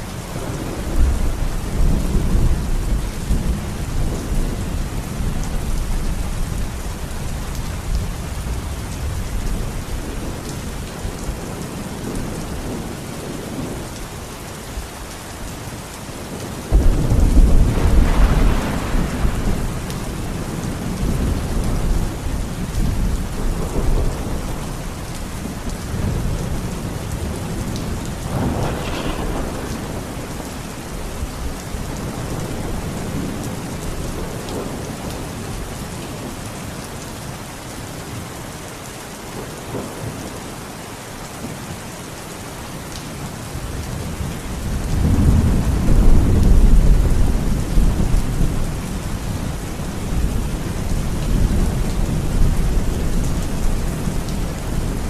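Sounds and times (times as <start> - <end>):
heavy rain falling: 0.0 - 55.0
sharp thunder crack: 16.7 - 19.9, 28.2 - 30.9
rolling thunder: 16.7 - 35.6, 43.7 - 55.0.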